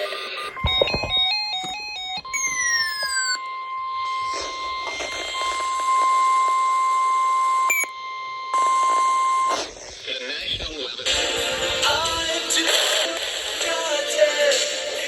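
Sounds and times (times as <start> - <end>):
high-pitched alarm tone: 0.0 - 9.6
radio noise hiss: 4.1 - 6.6, 8.8 - 13.9.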